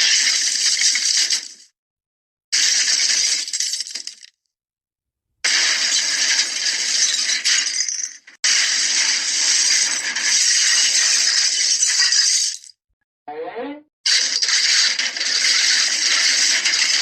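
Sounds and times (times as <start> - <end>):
small hard objects rattling: 2.6 - 4.3, 5.6 - 12.7, 14.1 - 17.0.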